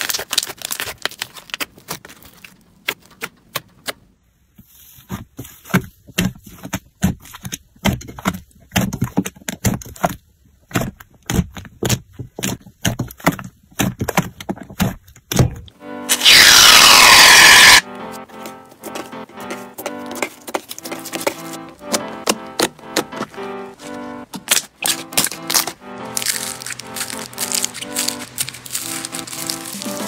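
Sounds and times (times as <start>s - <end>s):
slime crackling and popping: 0.0s - 2.6s, 16.1s - 17.8s, 24.4s - 30.0s.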